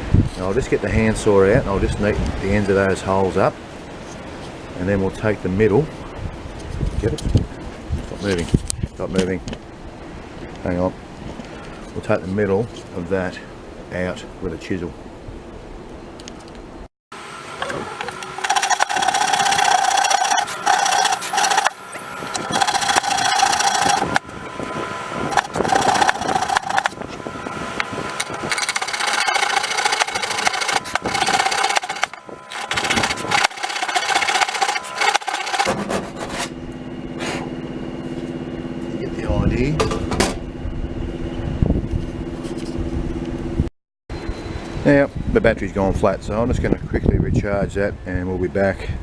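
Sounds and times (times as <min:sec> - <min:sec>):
saw cutting wood: 0:17.2 - 0:36.6.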